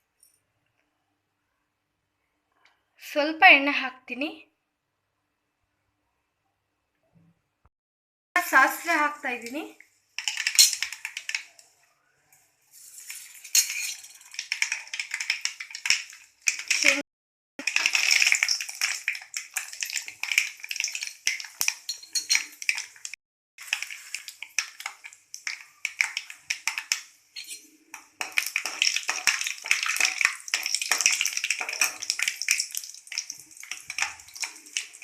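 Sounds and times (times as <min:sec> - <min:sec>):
mustard seeds crackling in hot oil: 0:08.4 - 0:11.8, 0:12.7 - 0:17.0, 0:17.6 - 0:35.0
metal spoon clinking against pan: 0:10.2 - 0:11.3, 0:13.3 - 0:14.8, 0:21.6 - 0:22.7, 0:25.5 - 0:32.7.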